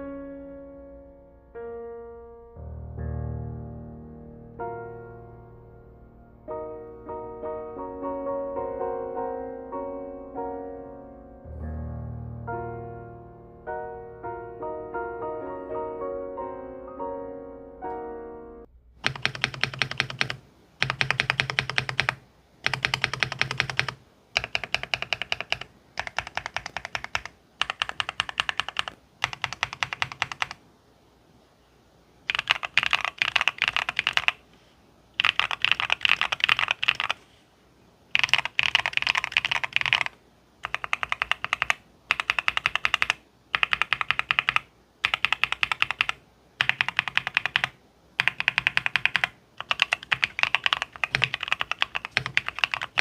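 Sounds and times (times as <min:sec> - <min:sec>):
mechanical keyboard typing: 0:19.0 - 0:30.6, 0:32.3 - 0:34.4, 0:35.2 - 0:37.2, 0:38.1 - 0:53.0.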